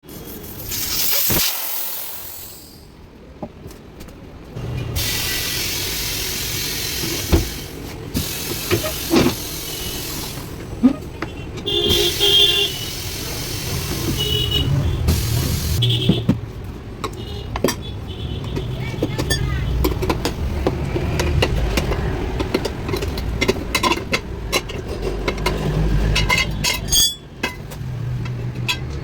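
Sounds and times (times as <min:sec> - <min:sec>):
air hissing: 0:00.1 - 0:03.0, 0:04.9 - 0:10.8, 0:11.9 - 0:15.9.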